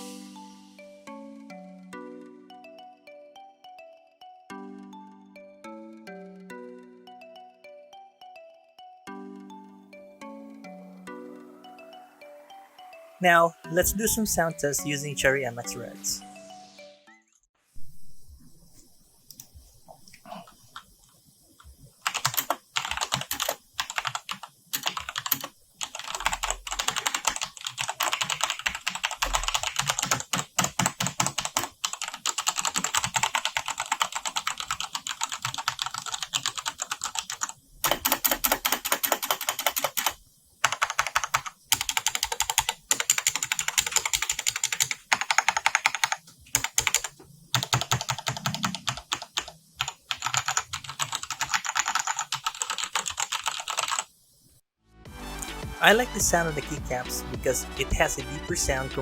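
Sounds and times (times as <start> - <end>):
mechanical keyboard typing: 22.0 - 54.1.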